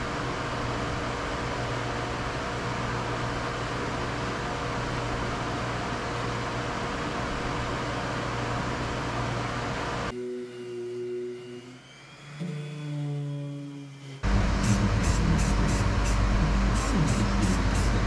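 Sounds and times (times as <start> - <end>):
low hum: 0.0 - 18.0
machine whirring hiss: 14.2 - 18.0.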